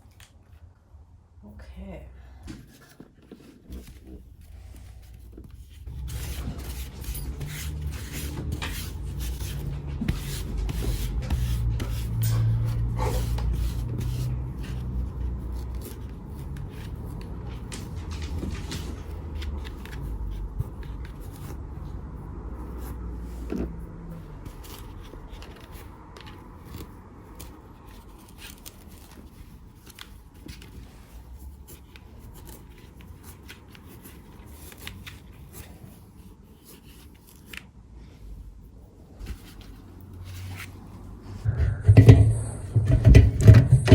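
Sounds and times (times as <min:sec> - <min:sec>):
things being handled: 0:02.4 - 0:22.0, 0:39.0 - 0:43.9
low hum falling in pitch: 0:41.4 - 0:43.9.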